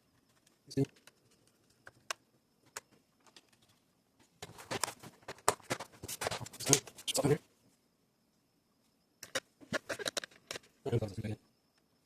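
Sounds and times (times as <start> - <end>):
screws and plastic case handled: 4.4 - 7.2, 9.2 - 10.7.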